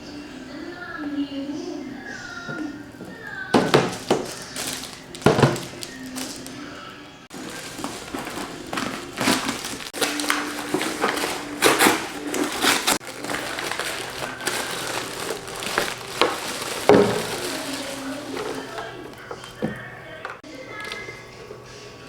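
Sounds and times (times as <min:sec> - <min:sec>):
plastic packaging crinkling: 0:03.0 - 0:06.7, 0:07.3 - 0:20.4.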